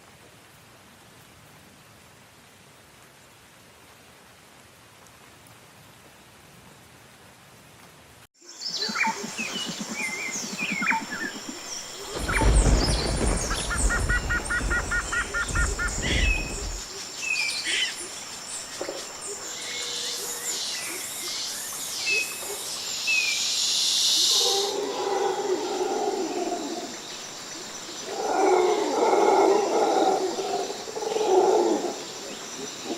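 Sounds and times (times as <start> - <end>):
faint rain hiss: 0.0 - 32.9
birds chirping and trilling: 8.5 - 18.7
deep rumble: 12.0 - 16.8.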